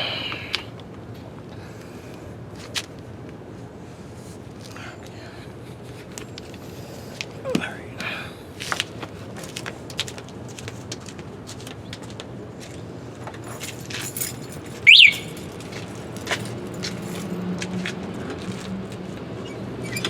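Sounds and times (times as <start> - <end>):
brief high squeak: 19.4 - 20.0
short falling squeak: 19.4 - 20.0.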